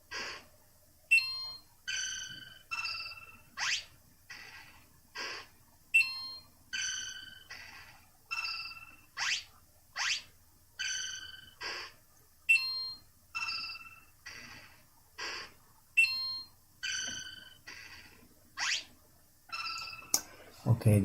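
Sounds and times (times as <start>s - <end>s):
electronic bleeps and chimes: 1.1s - 4.6s, 10.8s - 11.9s, 12.5s - 18.8s.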